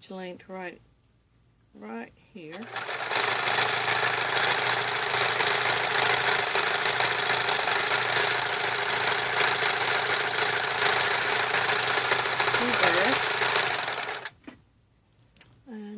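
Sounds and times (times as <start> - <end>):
sewing machine running: 2.5 - 14.4.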